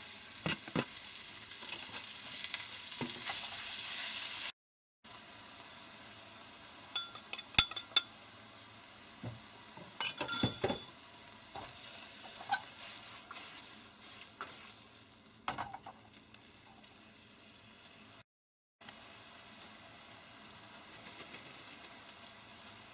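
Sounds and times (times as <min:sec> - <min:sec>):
utensils and dishes clinking: 0:07.0 - 0:08.1, 0:09.8 - 0:10.9.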